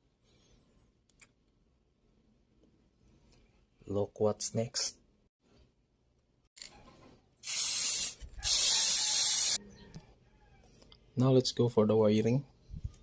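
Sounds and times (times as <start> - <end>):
hissing spray bursts: 7.4 - 9.6.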